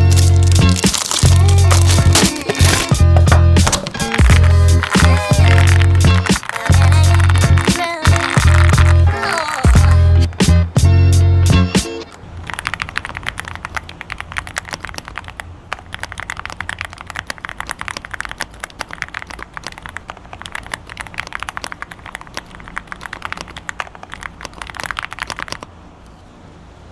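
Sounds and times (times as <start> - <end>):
fast mechanical keyboard typing: 0.0 - 9.9, 12.4 - 25.7.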